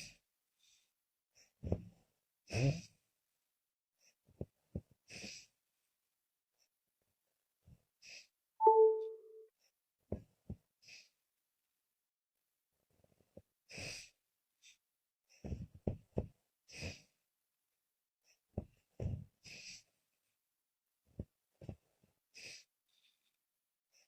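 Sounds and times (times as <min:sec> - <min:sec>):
chime-like tone: 0:08.6 - 0:09.3.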